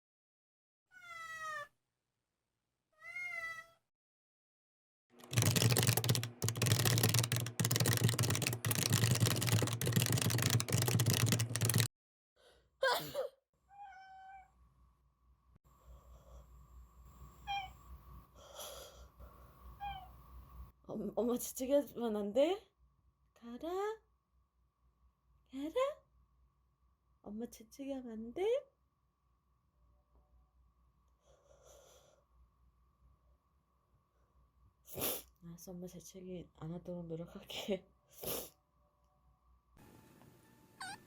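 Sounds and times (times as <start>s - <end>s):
cat meowing: 13.7s - 14.5s.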